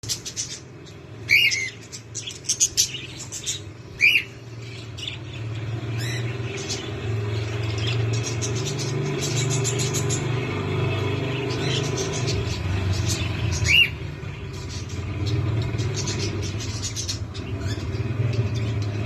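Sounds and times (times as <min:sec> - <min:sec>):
parakeets chirping: 0:00.0 - 0:19.0
parakeet harsh squawks: 0:01.3 - 0:03.2, 0:04.0 - 0:04.4.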